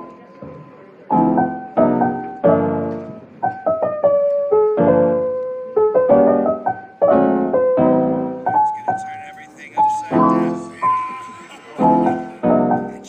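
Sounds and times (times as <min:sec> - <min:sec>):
soft piano music: 0:00.0 - 0:09.0, 0:11.8 - 0:13.0.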